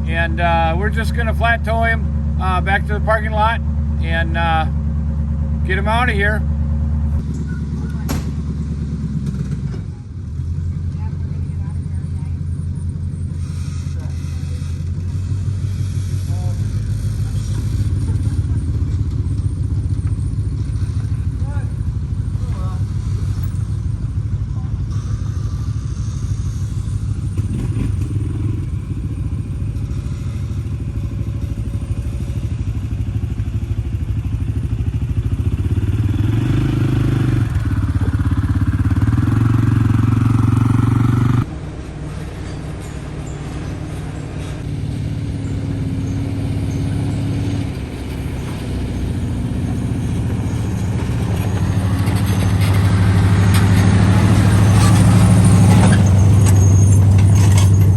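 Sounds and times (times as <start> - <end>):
truck engine running slowly: 0.0 - 57.9.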